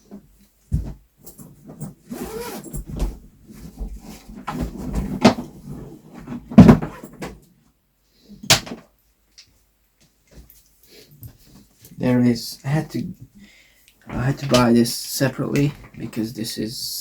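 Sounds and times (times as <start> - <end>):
knocks and thuds: 6.5 - 7.0.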